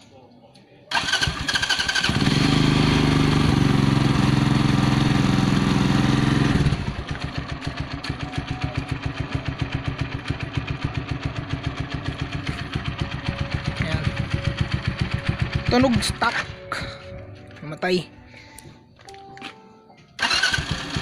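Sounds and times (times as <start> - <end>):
motorcycle engine idling: 0.9 - 17.2.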